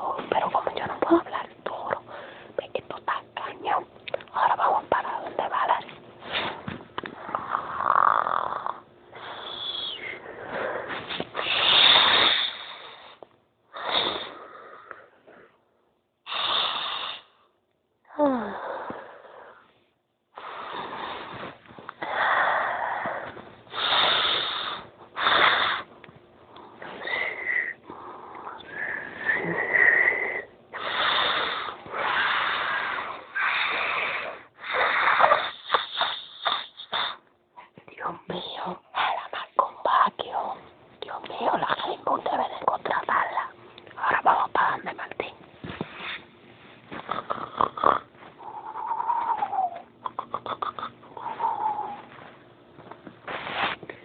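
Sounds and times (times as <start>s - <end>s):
person snoring: 7.2s - 15.2s, 26.8s - 37.2s, 47.0s - 52.1s.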